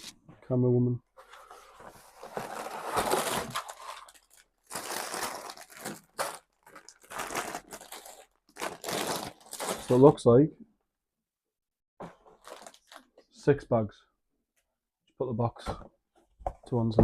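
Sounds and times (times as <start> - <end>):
plastic bags crinkling: 2.3 - 10.1, 12.3 - 13.2.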